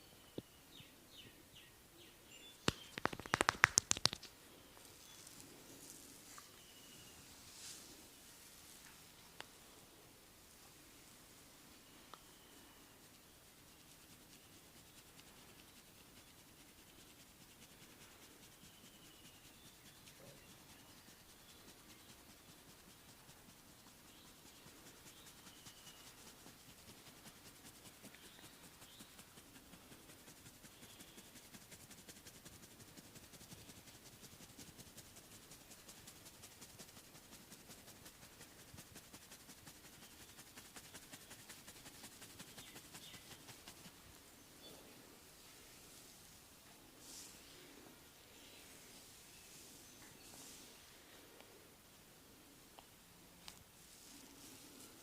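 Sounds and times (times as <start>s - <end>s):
hands rubbing hair and skin: 2.6s - 4.4s, 12.1s - 44.3s, 47.0s - 47.8s, 53.4s - 55.0s.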